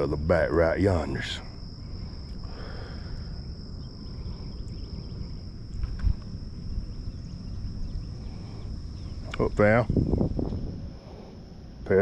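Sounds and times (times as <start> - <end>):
insects droning: 0.0 - 12.0
wind rumble on microphone: 3.3 - 12.0.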